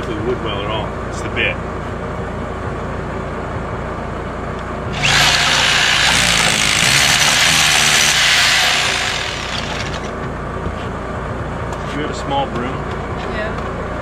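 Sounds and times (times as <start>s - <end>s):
hammer drill drilling: 4.9s - 10.1s.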